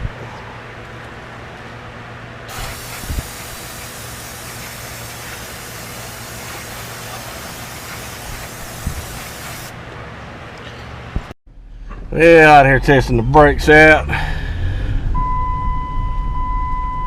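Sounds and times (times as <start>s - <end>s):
minivan running hum: 0.0s - 17.0s
loud even hiss: 2.5s - 9.8s.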